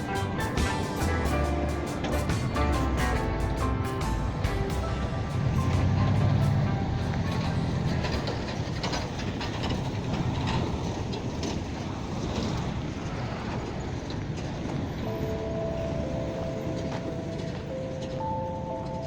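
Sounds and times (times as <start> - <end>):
rumbling vehicle noise: 0.0 - 19.0.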